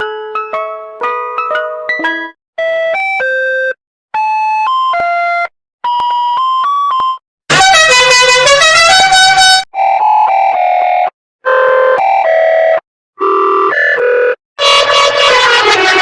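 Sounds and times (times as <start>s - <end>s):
harsh dense electronic melody: 7.5s - 9.6s, 14.6s - 16.0s.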